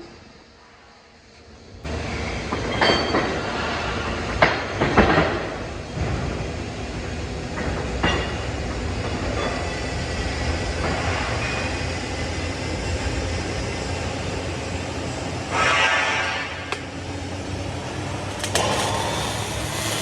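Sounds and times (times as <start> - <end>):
welding arc running: 10.1 - 20.0.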